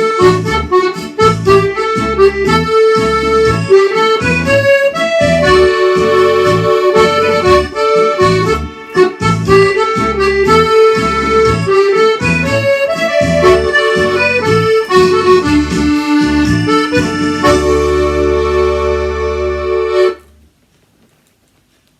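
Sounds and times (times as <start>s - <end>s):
accordion playing a melody: 0.0s - 20.3s.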